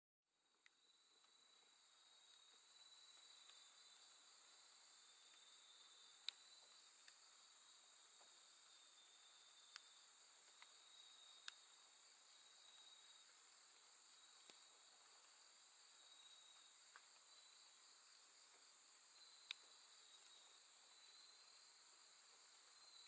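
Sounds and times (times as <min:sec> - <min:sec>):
crickets trilling: 0:00.8 - 0:23.0
faint sharp clicks: 0:09.7 - 0:10.7, 0:11.4 - 0:11.6, 0:19.4 - 0:20.4.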